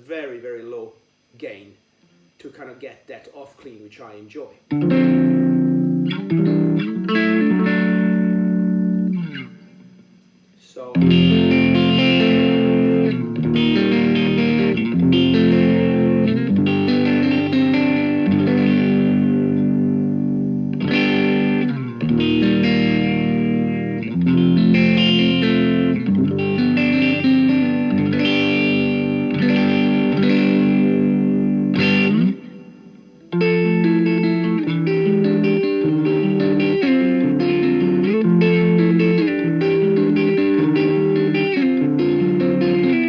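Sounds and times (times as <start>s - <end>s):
electric guitar chords strummed: 4.7s - 10.3s, 10.9s - 43.0s.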